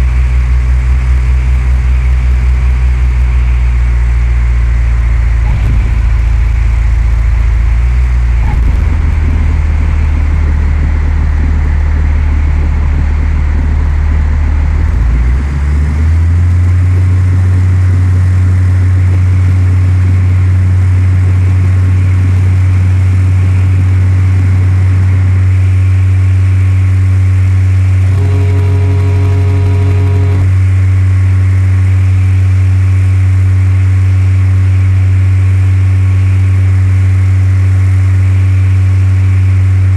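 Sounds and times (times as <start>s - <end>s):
propeller plane engine droning: 0.0s - 33.4s
steady tone: 5.1s - 12.7s, 28.0s - 30.7s.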